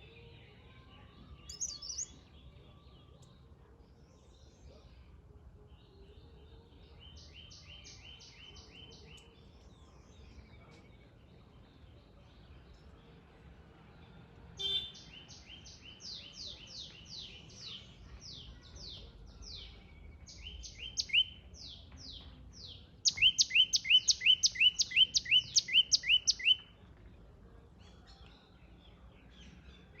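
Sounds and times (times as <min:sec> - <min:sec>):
bird whistling downward notes: 0:20.8 - 0:21.3, 0:23.1 - 0:26.6.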